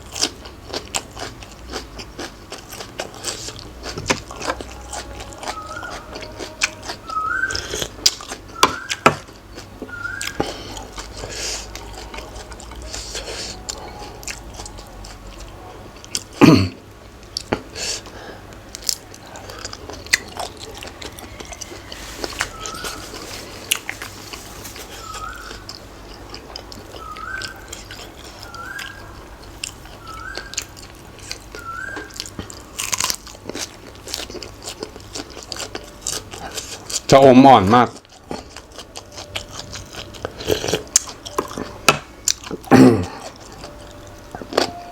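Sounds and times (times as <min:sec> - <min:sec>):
biting and chewing crunchy food: 0:00.0 - 0:44.9
faint short rising chirp: 0:20.9 - 0:23.6.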